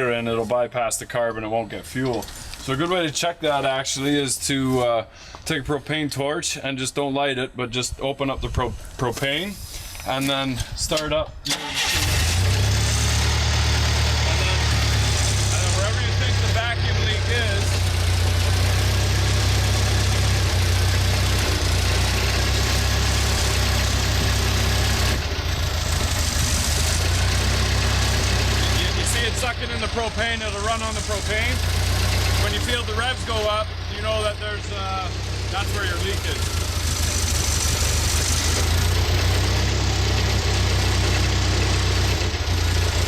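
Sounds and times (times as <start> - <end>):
forklift engine idling: 11.5 - 43.0.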